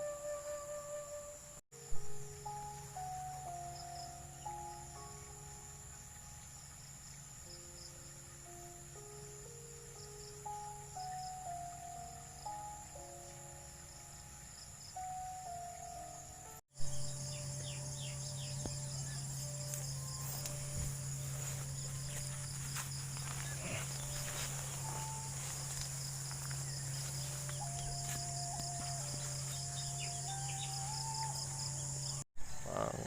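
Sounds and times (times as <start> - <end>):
music: 0.0 - 32.2
insects trilling: 0.0 - 33.0
low steady hum: 15.1 - 32.2.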